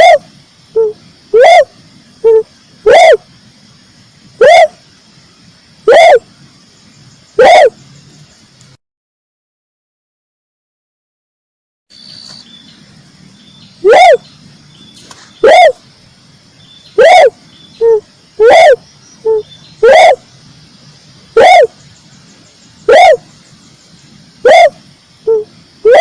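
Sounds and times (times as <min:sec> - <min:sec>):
dove cooing: 0:00.0 - 0:03.3, 0:04.4 - 0:04.8, 0:05.9 - 0:06.2, 0:07.4 - 0:07.8, 0:13.8 - 0:14.3, 0:15.4 - 0:15.8, 0:17.0 - 0:20.2, 0:21.4 - 0:21.8, 0:22.8 - 0:23.3, 0:24.4 - 0:26.0.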